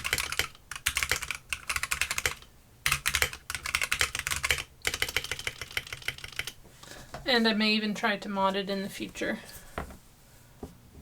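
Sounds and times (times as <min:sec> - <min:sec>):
fast typing on keyboard: 0:00.0 - 0:06.6.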